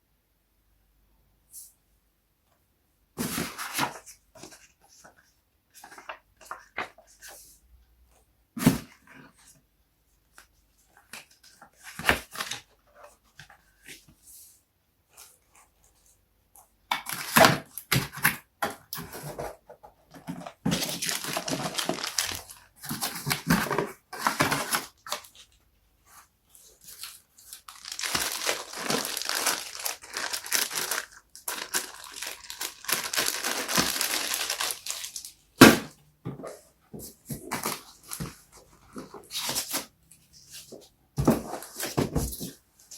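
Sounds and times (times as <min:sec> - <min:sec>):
plastic and cardboard crinkling: 0:16.9 - 0:42.9.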